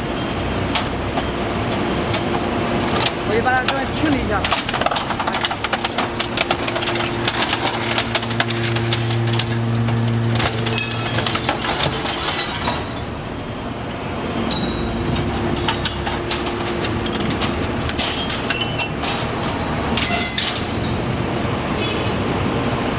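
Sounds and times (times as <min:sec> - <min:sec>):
scrap metal clanking and ringing: 0:04.5 - 0:21.0.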